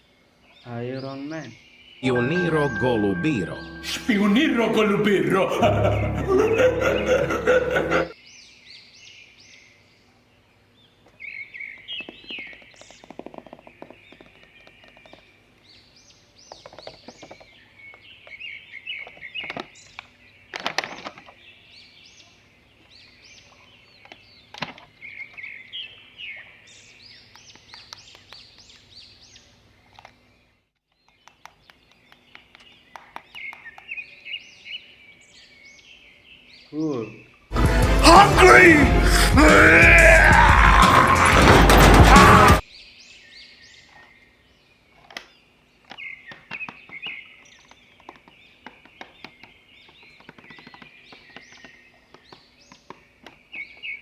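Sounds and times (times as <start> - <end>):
small birds chirping: 0.0 - 2.1, 8.1 - 37.5, 42.6 - 54.0.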